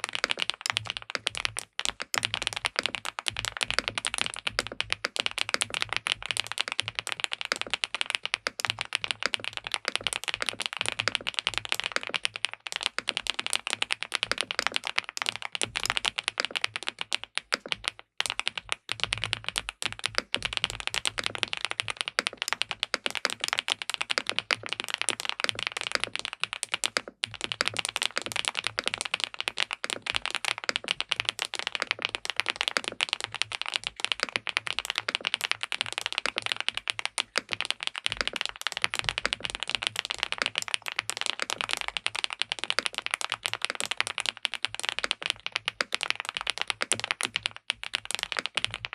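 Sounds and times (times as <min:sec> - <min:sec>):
typing on mechanical keyboard: 0:00.0 - 0:48.9.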